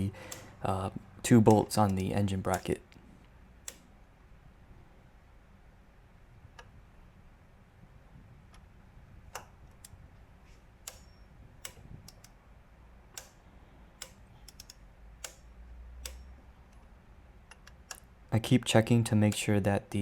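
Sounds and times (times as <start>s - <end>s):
low steady hum: 0.0s - 20.0s
torque wrench clicks and taps: 0.2s - 0.6s, 1.4s - 2.8s, 3.6s - 3.9s, 10.8s - 12.4s, 13.1s - 13.4s, 14.0s - 16.8s.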